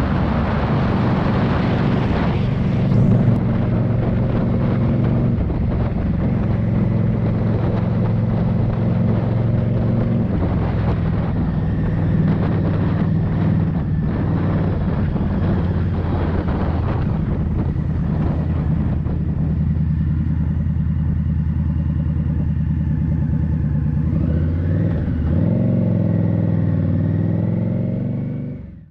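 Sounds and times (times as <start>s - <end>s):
motorcycle engine running: 0.0s - 28.9s.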